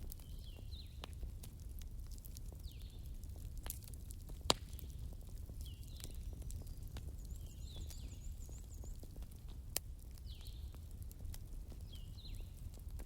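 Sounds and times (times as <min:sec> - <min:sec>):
wood fire crackling: 0:00.0 - 0:13.0
small birds chirping: 0:00.2 - 0:01.1, 0:02.5 - 0:03.2, 0:04.7 - 0:09.4, 0:10.1 - 0:10.9, 0:11.7 - 0:12.6.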